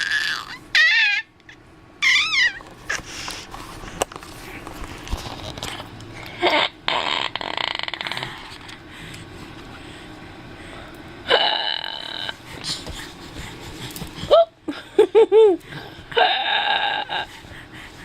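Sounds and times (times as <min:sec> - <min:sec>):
baby raspy growl: 0:00.0 - 0:01.2
baby squealing: 0:00.0 - 0:01.3, 0:02.0 - 0:02.6.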